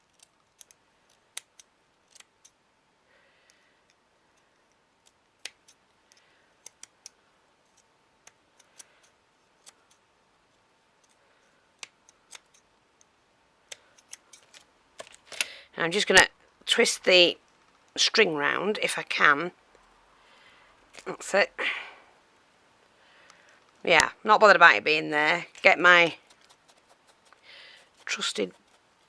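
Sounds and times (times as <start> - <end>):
rustling of craft materials: 3.4 - 15.7, 25.3 - 29.0.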